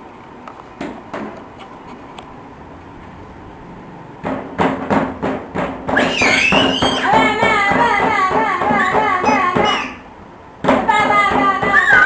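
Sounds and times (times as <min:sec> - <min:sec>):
sharp knocks: 0:04.2 - 0:10.0, 0:10.6 - 0:12.0.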